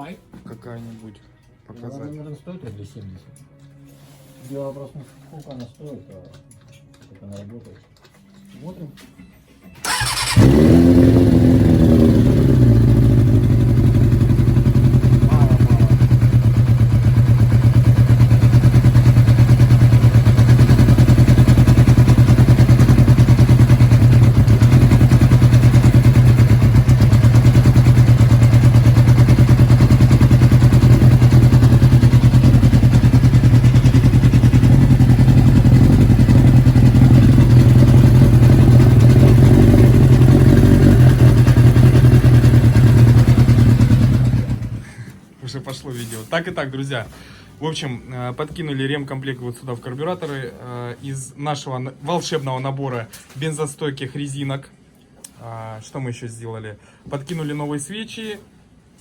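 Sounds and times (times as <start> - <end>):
motorcycle engine running: 9.8 - 44.9.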